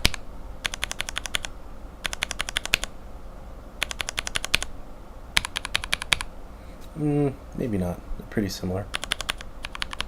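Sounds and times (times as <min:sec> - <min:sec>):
keyboard switches clacking: 0:03.8 - 0:04.7, 0:05.4 - 0:06.3, 0:08.9 - 0:10.0.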